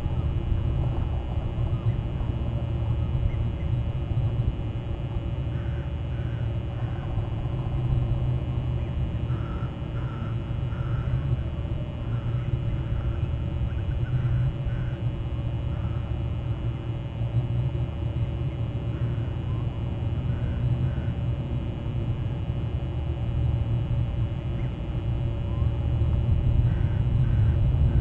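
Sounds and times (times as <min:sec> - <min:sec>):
low outdoor rumble: 0:00.0 - 0:28.0
distant bird calls: 0:05.4 - 0:17.0, 0:18.3 - 0:21.2, 0:26.6 - 0:28.0.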